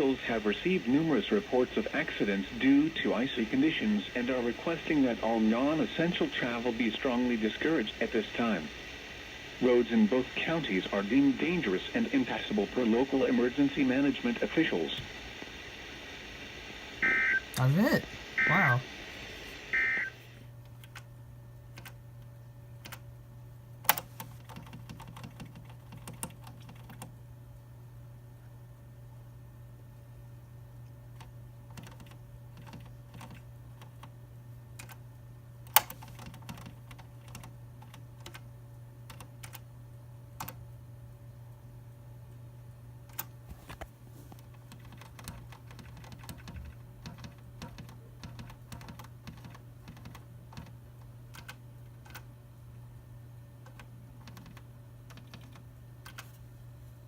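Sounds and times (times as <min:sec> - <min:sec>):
steady low hum: 0:00.0 - 0:24.5.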